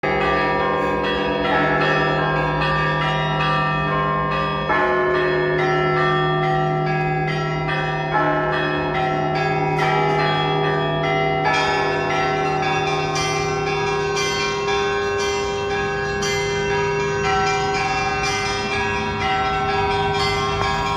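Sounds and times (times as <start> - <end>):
large bell hum: 0.0 - 20.9
small church bells ringing: 0.0 - 20.9
heavy bell strokes: 7.1 - 20.9.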